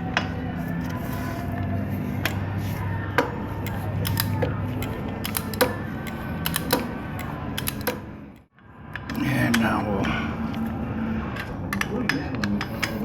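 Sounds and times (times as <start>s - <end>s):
torque wrench clicking: 3.6s - 8.0s.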